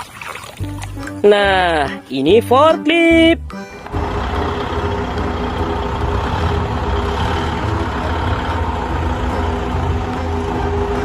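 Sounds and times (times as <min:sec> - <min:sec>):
forklift engine running: 0:03.5 - 0:11.0.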